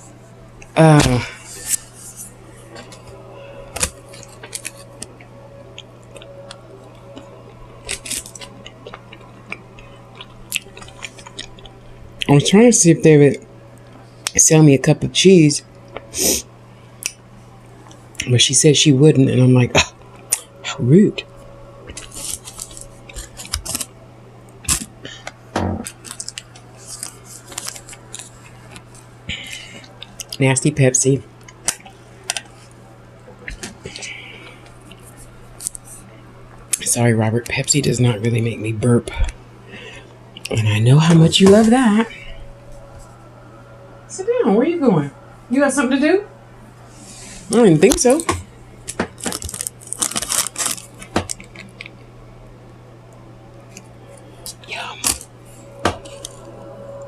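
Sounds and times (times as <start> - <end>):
low steady hum: 0.0 - 57.0
crisp chewing crunches: 3.7 - 5.2, 5.8 - 12.4, 21.9 - 24.0, 24.6 - 30.4, 49.1 - 52.1, 54.4 - 55.3.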